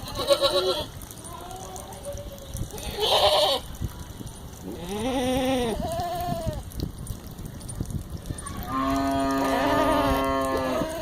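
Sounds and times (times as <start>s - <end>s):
goats bleating: 0.0s - 2.0s, 2.8s - 3.7s, 4.7s - 6.6s, 8.7s - 11.0s.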